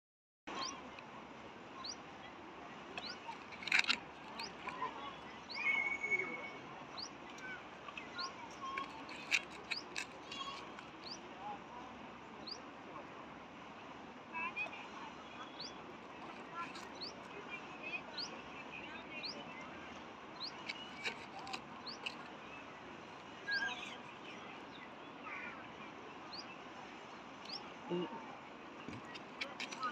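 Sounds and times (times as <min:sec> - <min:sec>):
soft bird chirps: 0:00.5 - 0:00.9, 0:01.8 - 0:02.0, 0:02.9 - 0:11.3, 0:15.0 - 0:28.1.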